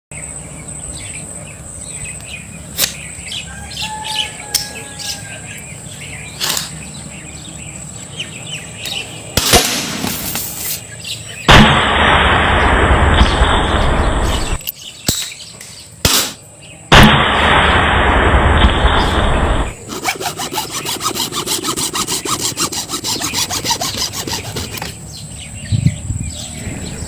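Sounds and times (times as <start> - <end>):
small birds chirping: 0.1 - 9.4, 10.2 - 11.5, 13.2 - 16.9, 20.0 - 27.0.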